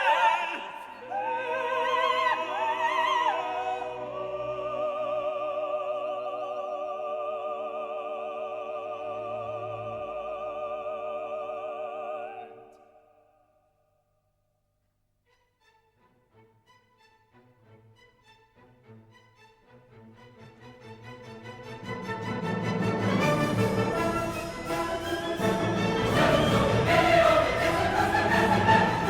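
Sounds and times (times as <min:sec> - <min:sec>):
operatic singing with vibrato: 0:00.0 - 0:13.1, 0:21.7 - 0:29.0
orchestra: 0:15.3 - 0:29.0.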